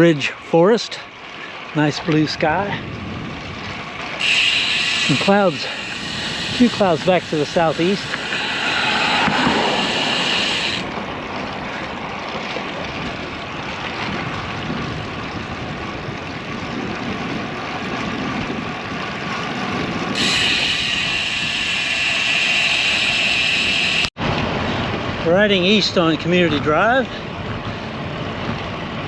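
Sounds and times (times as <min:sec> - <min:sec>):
wind on microphone: 0:02.2 - 0:25.2
bike tyre noise on road: 0:02.9 - 0:25.9
high-pitched buzz: 0:04.2 - 0:10.9, 0:20.2 - 0:24.1.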